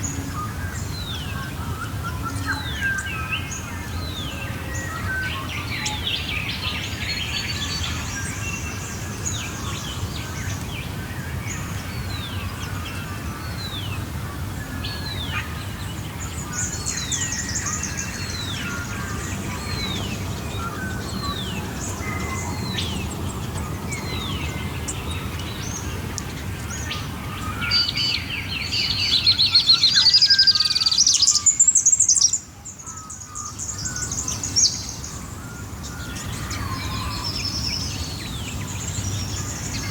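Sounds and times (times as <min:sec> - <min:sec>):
birds singing in chorus: 0:00.0 - 0:39.9
rapid high bird twittering: 0:16.3 - 0:39.9.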